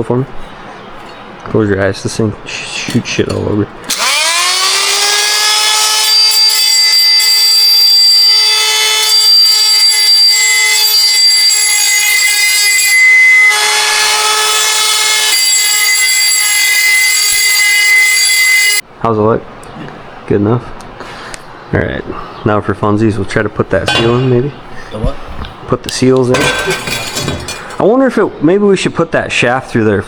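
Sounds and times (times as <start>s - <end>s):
power grinder grinding metal: 3.9s - 17.0s, 26.4s - 27.8s.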